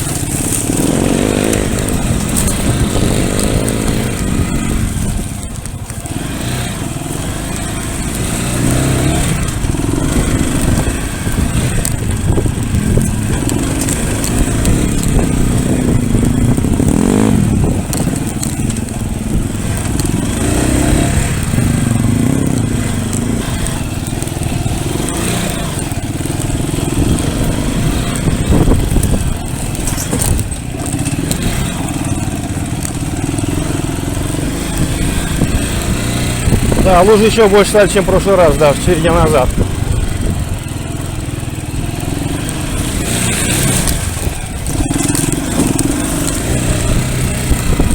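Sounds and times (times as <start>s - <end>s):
pit bike engine revving: 0.0s - 47.9s.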